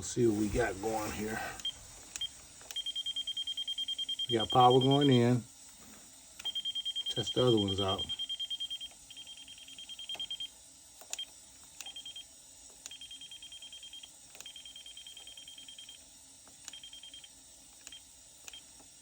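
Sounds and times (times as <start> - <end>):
voltage detector beeping rapidly: 0.3 - 5.4, 6.4 - 10.6, 11.2 - 12.3, 12.9 - 16.0, 16.6 - 17.3.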